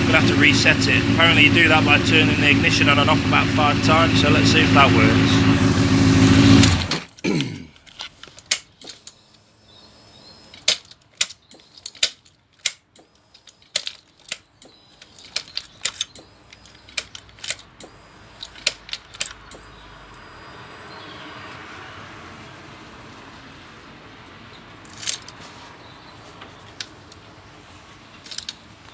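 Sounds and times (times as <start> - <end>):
ignition key switch clicking: 8.4 - 21.6
faint steady hum: 13.0 - 21.6.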